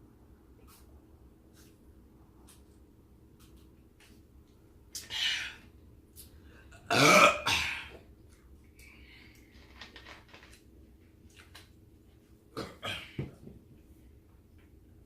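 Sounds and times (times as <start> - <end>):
loud burp: 6.9 - 7.9.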